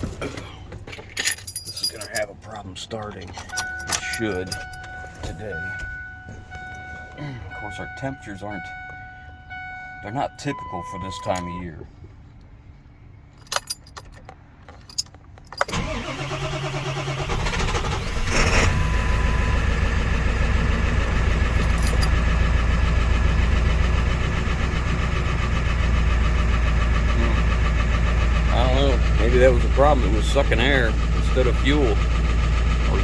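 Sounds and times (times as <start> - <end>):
diesel engine idling: 1.9 - 13.3, 15.6 - 33.0
starter cranking: 14.8 - 18.8.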